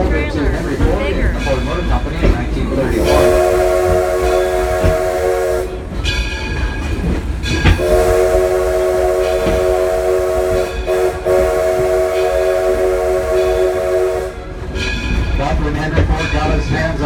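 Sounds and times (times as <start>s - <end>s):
train running rumble: 0.0s - 17.0s
steam locomotive whistle chord: 2.9s - 6.0s, 7.7s - 14.6s.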